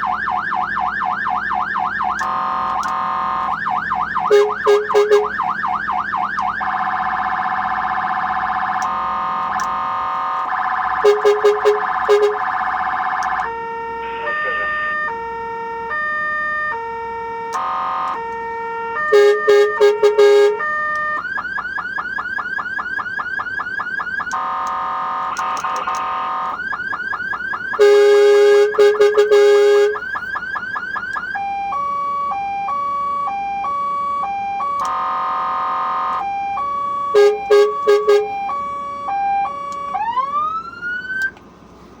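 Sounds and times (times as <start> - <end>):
electronic siren: 0.0 - 41.4.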